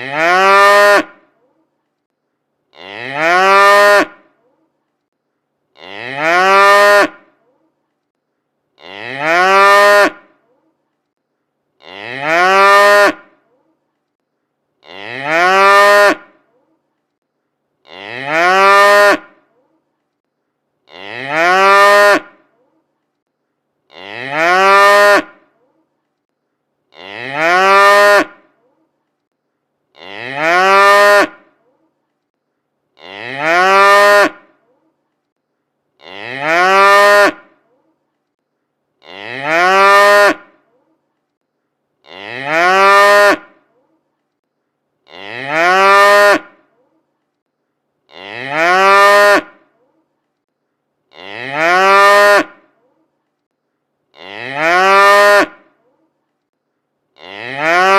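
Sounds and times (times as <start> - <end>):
cow mooing: 57.2 - 57.9.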